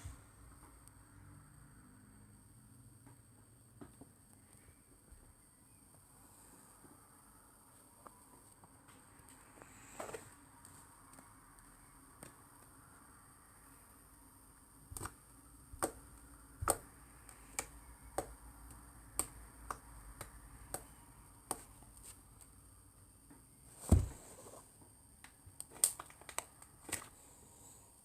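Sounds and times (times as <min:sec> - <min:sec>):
slime clicking and popping: 0:14.9 - 0:15.2, 0:15.8 - 0:21.6
heavy thump: 0:23.8 - 0:24.3.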